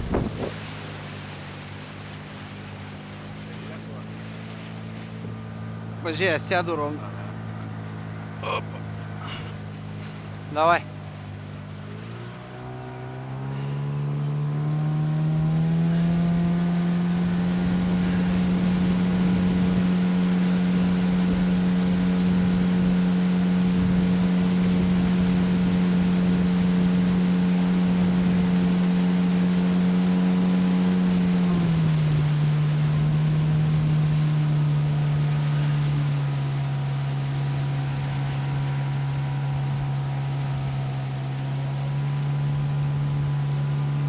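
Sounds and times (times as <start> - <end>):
rushing buffeting noise: 0.0 - 0.8
outboard motor running: 0.0 - 44.0.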